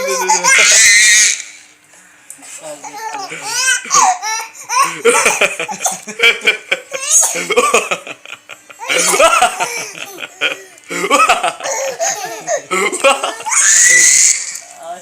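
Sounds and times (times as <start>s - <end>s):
baby laughing: 0.0s - 1.0s, 2.8s - 14.1s
baby coughing: 3.4s - 6.1s, 7.0s - 7.8s, 11.1s - 13.5s.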